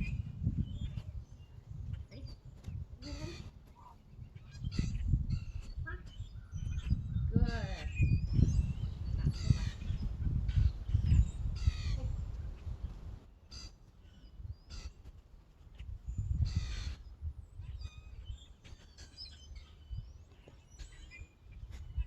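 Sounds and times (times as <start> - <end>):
small bird chirps: 0.0 - 13.0
harsh bird calls: 3.0 - 15.0, 16.3 - 22.0.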